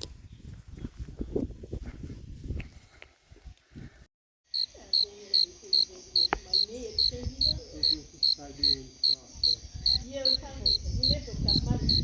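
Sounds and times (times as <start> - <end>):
cricket chirping: 4.5 - 12.0
faint voices murmuring: 4.6 - 12.0.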